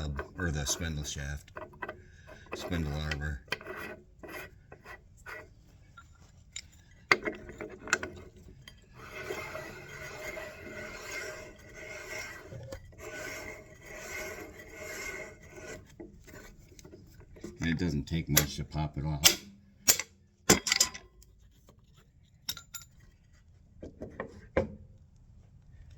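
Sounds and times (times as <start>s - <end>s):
metal rasping and scraping: 0.0s - 20.1s.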